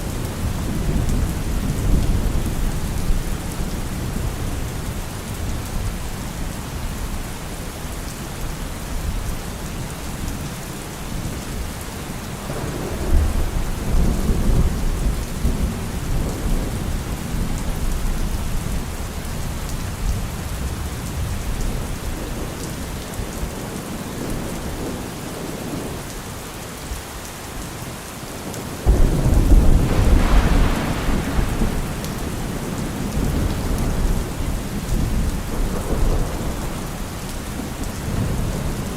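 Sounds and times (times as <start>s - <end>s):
steady rain: 0.0s - 38.9s
rolling thunder: 12.4s - 18.8s, 28.8s - 38.9s.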